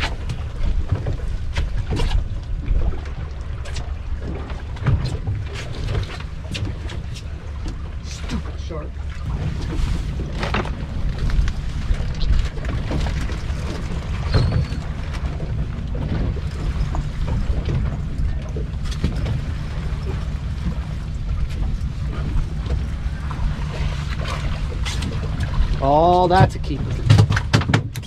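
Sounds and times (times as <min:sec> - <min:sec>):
short knocks and clicks: 0:26.4 - 0:28.0.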